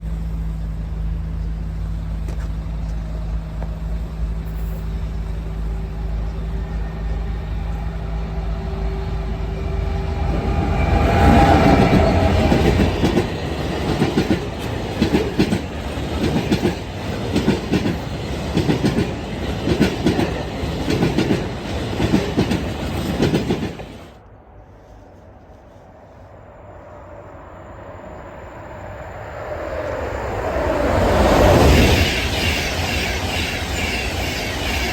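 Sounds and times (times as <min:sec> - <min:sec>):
locomotive engine droning: 0:00.0 - 0:34.9
wheels clacking over rail joints: 0:10.4 - 0:24.2.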